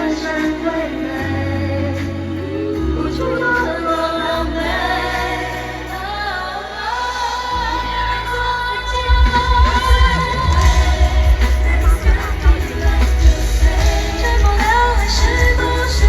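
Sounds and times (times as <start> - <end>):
synths: 0.0 - 16.0
woman singing: 0.0 - 16.0
heavy bass beat: 9.2 - 16.0.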